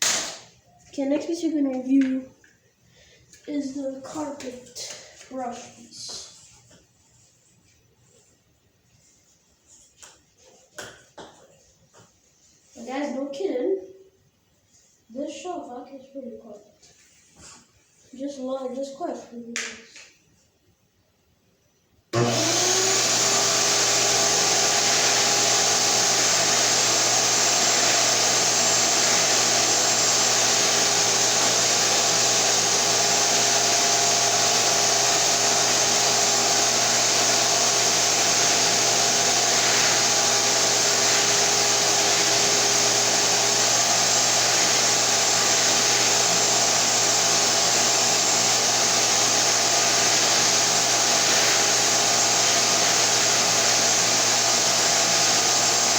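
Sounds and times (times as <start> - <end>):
vacuum cleaner running: 0.0 - 0.5, 22.1 - 55.9.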